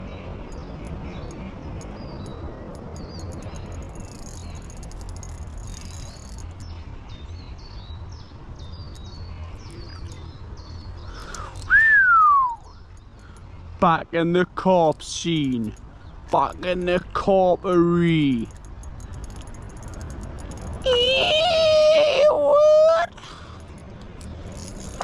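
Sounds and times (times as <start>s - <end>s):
small birds chirping: 0.0s - 11.8s, 12.5s - 25.0s.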